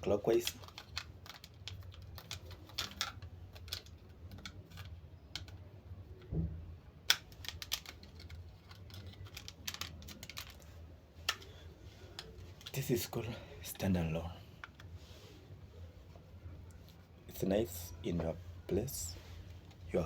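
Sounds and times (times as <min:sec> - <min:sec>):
low steady hum: 0:00.0 - 0:20.0
plastic clicks and taps: 0:00.5 - 0:05.6.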